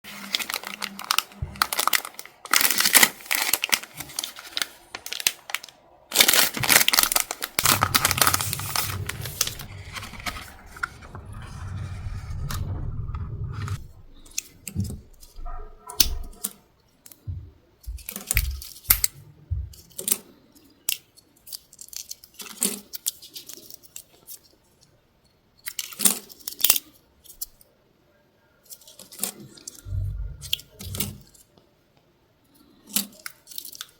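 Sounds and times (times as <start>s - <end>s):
packaging tearing and crinkling: 0.1s - 11.4s.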